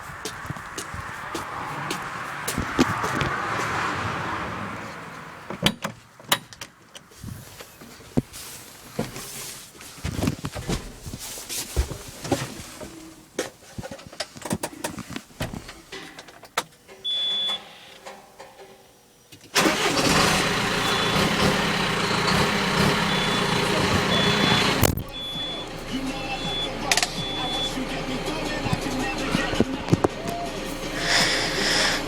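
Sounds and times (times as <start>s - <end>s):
tractor engine starting and running: 15.6s - 32.0s
short high beep: 17.1s - 17.8s, 23.1s - 27.8s.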